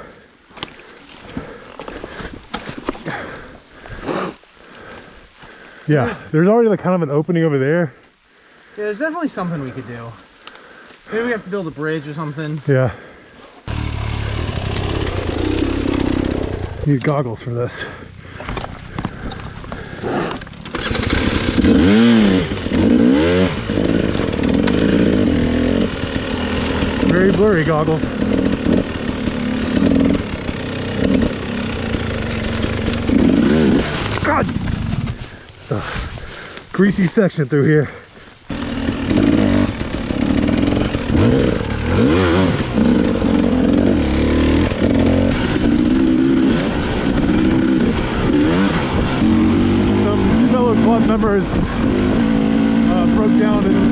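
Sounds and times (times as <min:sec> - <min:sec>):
dirt bike engine revving: 0:13.6 - 0:17.0, 0:19.8 - 0:35.9, 0:38.5 - 0:53.9.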